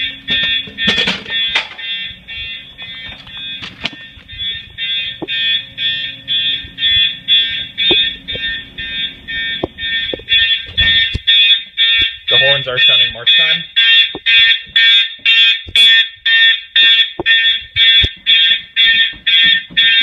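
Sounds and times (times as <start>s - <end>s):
low hum: 0.0s - 14.3s
fire alarm horns pulsing: 0.0s - 20.0s.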